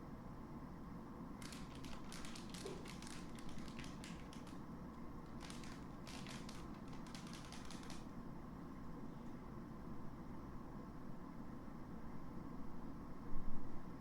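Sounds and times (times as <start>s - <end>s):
cat claws clicking and scratching: 1.4s - 4.6s, 5.2s - 8.1s.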